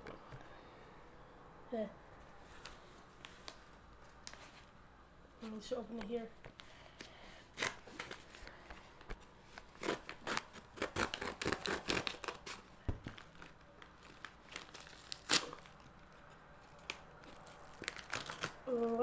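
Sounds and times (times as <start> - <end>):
package wrapping tearing and rustling: 9.5 - 19.0
sharp paper rip: 9.7 - 12.6, 14.8 - 15.7.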